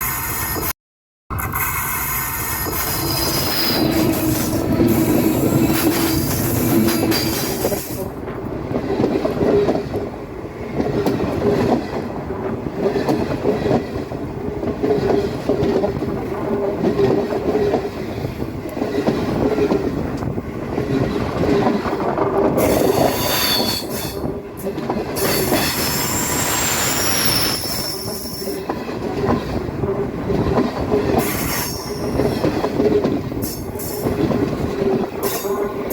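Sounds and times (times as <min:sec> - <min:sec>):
high-pitched wheel squeal: 0:01.3 - 0:07.9, 0:22.6 - 0:24.2, 0:25.2 - 0:28.6
train wheels rumbling on track: 0:01.3 - 0:35.9.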